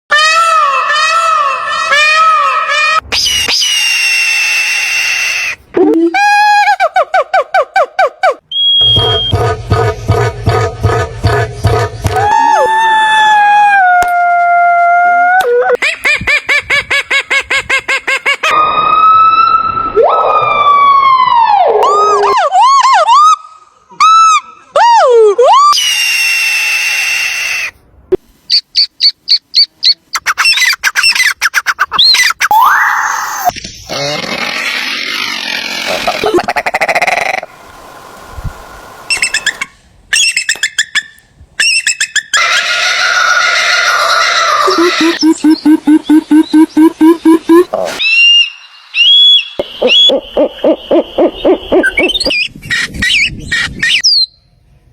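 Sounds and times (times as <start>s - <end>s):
siren-like wail: 18.5s - 22.6s.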